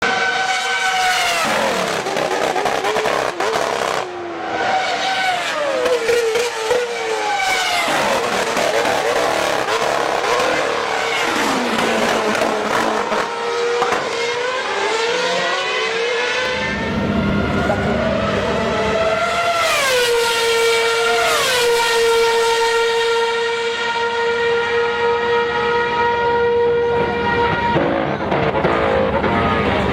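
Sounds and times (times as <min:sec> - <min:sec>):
racing car engine revving: 0:00.0 - 0:29.9.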